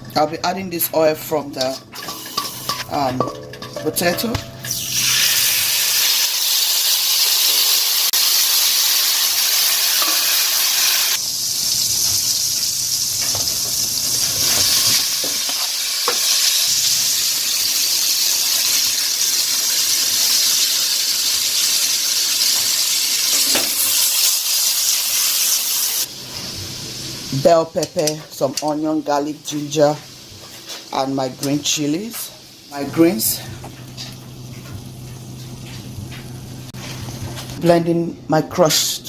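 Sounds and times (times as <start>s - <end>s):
utensil knocking pan: 0.0s - 4.8s
food sizzling in oil: 1.6s - 27.9s, 28.5s - 37.6s.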